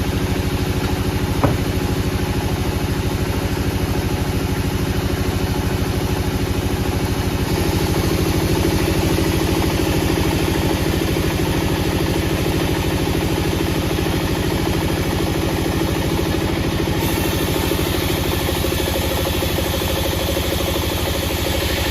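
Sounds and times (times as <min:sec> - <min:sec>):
engine running with fast throbbing: 0:00.0 - 0:21.9.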